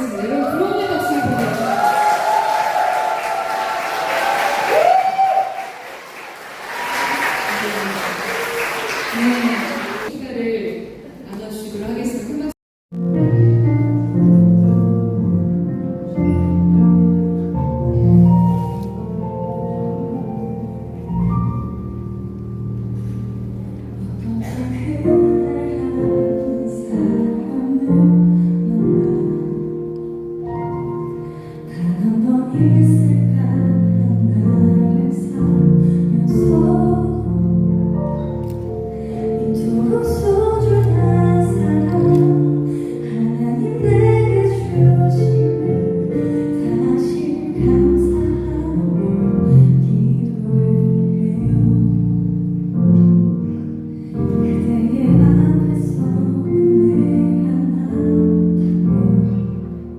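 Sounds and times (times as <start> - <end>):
gentle instrumental accompaniment: 13.0 - 59.9.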